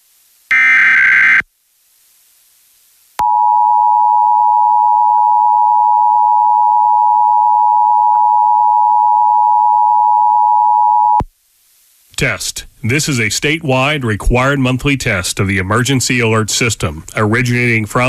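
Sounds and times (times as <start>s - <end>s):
faint hiss: 0.0s - 0.5s, 1.4s - 3.2s, 11.3s - 18.0s
loud steady two-tone alert signal: 0.5s - 1.4s.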